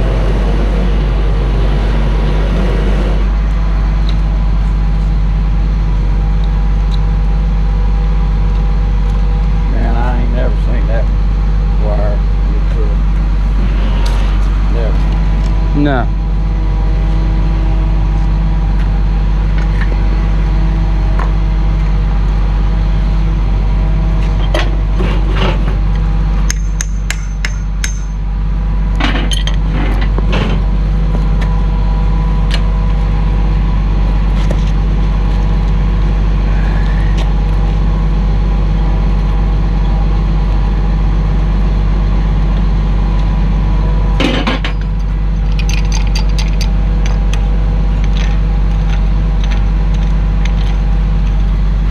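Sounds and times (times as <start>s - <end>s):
engine running steadily: 0.0s - 51.9s.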